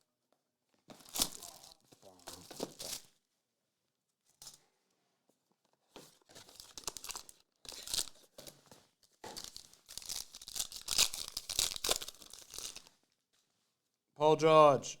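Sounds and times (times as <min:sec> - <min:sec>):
card pack wrapper tearing: 0:01.1 - 0:01.8, 0:09.4 - 0:12.9.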